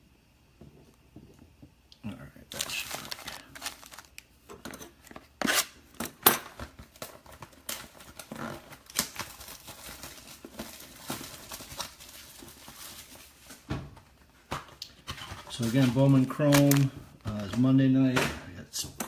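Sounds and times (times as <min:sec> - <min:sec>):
plastic wrap tearing and crinkling: 0:02.5 - 0:04.2, 0:06.6 - 0:13.7, 0:15.4 - 0:17.7.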